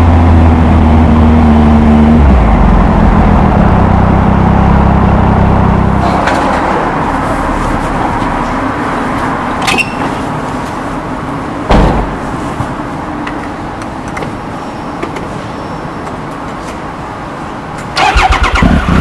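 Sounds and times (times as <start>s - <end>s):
motorcycle engine deep exhaust note: 0.0s - 6.2s
road noise: 0.0s - 19.0s
brief thump: 11.7s - 12.2s.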